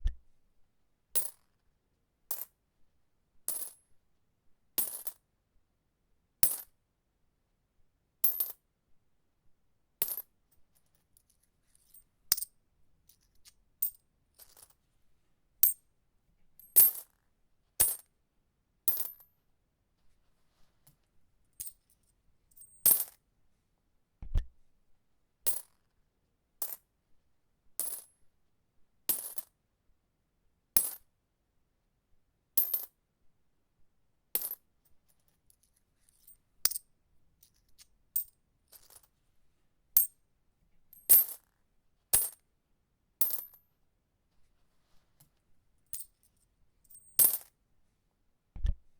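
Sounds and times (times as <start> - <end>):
coins dropping with metallic clink: 41.0 - 41.4, 46.9 - 47.5.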